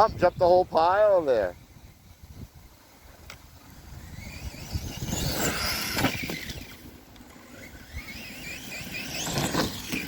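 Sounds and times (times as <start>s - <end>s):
electric motor whining: 1.5s - 10.0s
tyres rumbling on grass: 3.4s - 10.0s.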